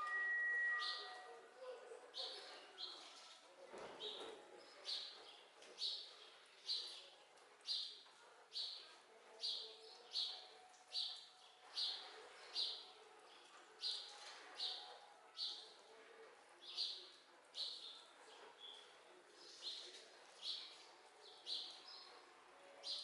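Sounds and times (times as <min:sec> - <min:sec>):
bird short high call: 0:00.0 - 0:01.3.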